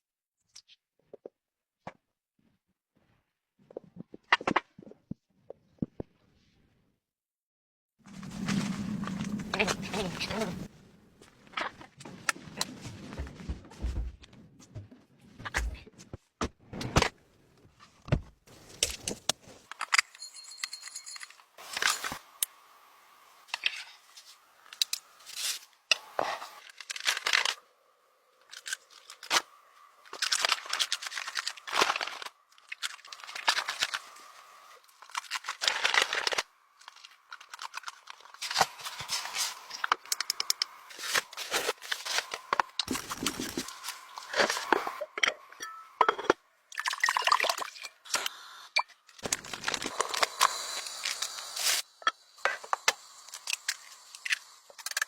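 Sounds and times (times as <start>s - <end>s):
rustling and crinkling: 8.1s - 16.3s, 40.8s - 45.0s, 49.2s - 51.9s.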